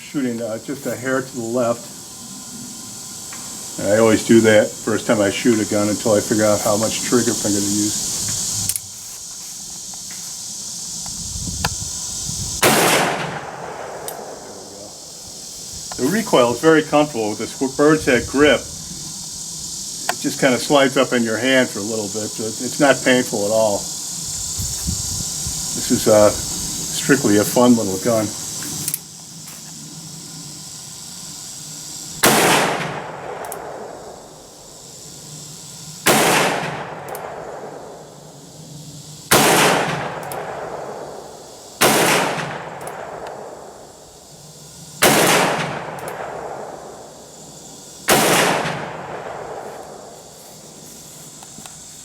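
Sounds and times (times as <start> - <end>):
revolver gunshot: 12.6 - 14.6, 32.2 - 33.9, 36.0 - 37.8, 39.3 - 40.9, 41.8 - 43.5, 45.0 - 46.8, 48.1 - 49.6
light click: 33.4 - 33.7, 37.0 - 37.3, 40.2 - 40.4.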